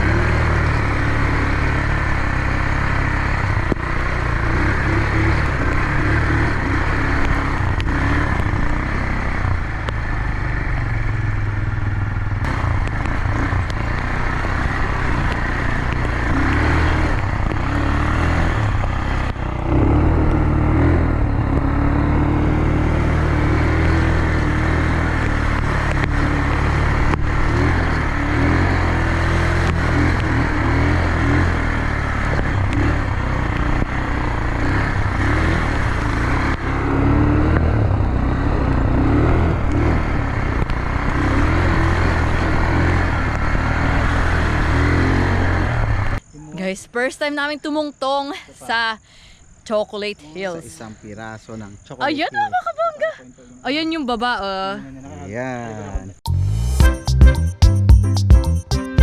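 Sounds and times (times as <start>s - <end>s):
atv engine revving: 0.0s - 46.2s
road and wind noise: 0.0s - 55.0s.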